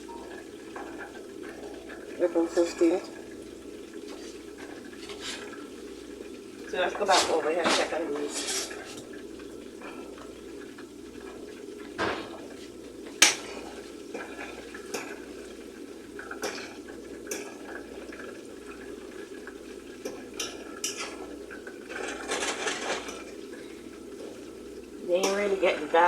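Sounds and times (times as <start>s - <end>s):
metal utensil scraping a pan: 20.4s - 21.3s, 21.9s - 23.2s.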